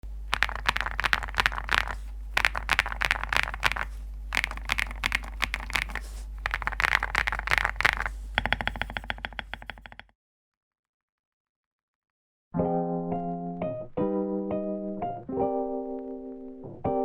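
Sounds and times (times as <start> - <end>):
mechanical keyboard typing: 0.3 - 10.1.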